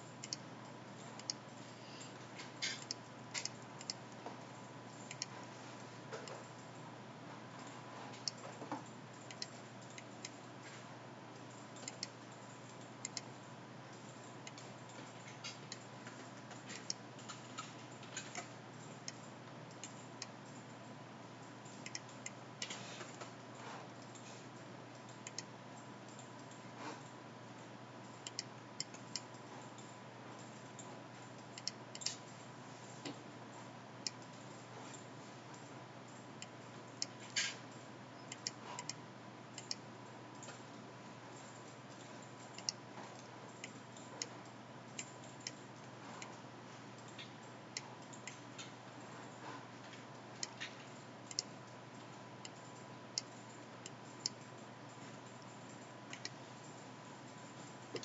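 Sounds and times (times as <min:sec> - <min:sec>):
low electrical hum: 0:00.0 - 0:58.0
mouse and keyboard clicks: 0:02.4 - 0:04.0, 0:05.0 - 0:05.3, 0:08.1 - 0:10.4, 0:11.8 - 0:12.2, 0:14.4 - 0:20.3, 0:21.8 - 0:23.3, 0:25.0 - 0:25.5, 0:31.5 - 0:32.3, 0:38.2 - 0:39.0, 0:42.6 - 0:44.4, 0:50.4 - 0:51.5.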